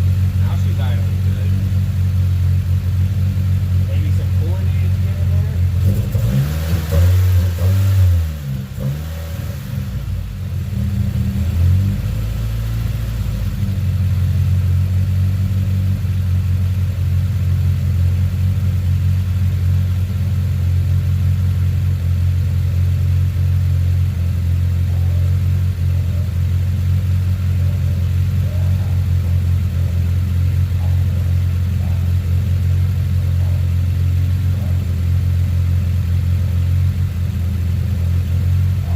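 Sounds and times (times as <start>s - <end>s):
car engine idling: 0.0s - 38.9s.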